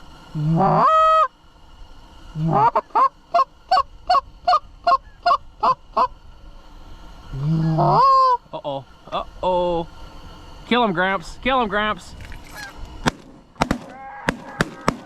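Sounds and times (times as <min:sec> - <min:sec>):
goose call honk: 0:00.4 - 0:01.3, 0:12.5 - 0:12.8, 0:13.7 - 0:15.0
goose call short clucks: 0:12.5 - 0:12.8.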